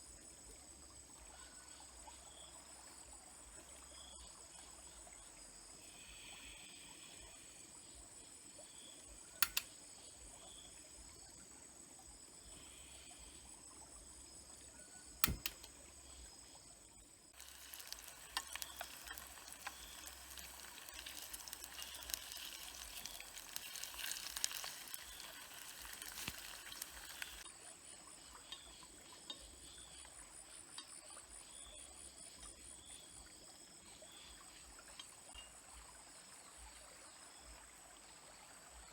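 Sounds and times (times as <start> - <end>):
insects trilling: 0.0 - 37.6
faint running water: 0.0 - 38.9
sharp clicks: 9.4 - 9.8, 15.2 - 15.8, 17.4 - 27.5
dense liquid crackling: 17.3 - 27.5.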